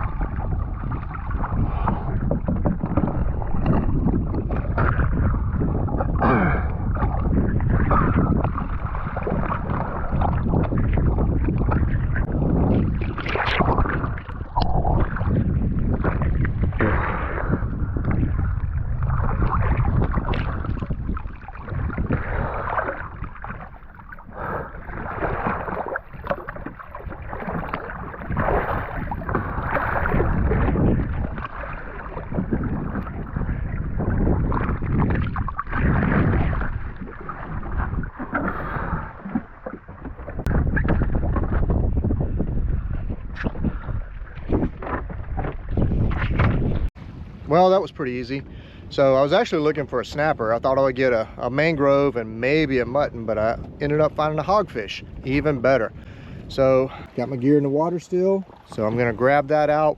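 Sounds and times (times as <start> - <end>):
knocks and splashes: 0.0 - 47.1
muffled water sloshing: 0.0 - 59.9.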